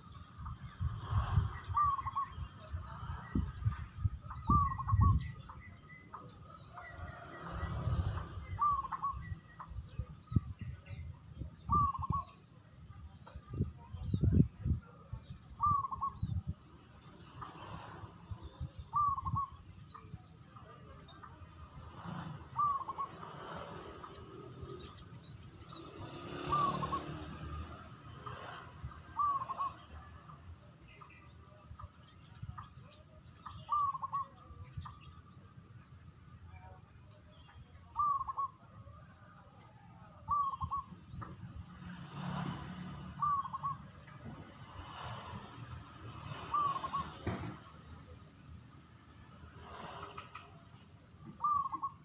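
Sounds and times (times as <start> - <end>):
dove cooing song: 1.0 - 3.3, 4.3 - 5.4, 6.2 - 12.4, 15.6 - 16.4, 17.7 - 20.2, 21.9 - 30.4, 32.5 - 35.1, 37.8 - 41.2, 42.2 - 44.1, 46.2 - 47.6, 51.2 - 52.0
dove cooing: 15.6 - 16.1, 29.2 - 29.8, 51.4 - 52.0.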